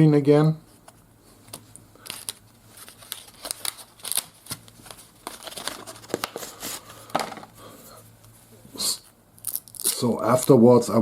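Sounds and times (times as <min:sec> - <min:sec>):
wrapper rustling: 0:02.0 - 0:07.0.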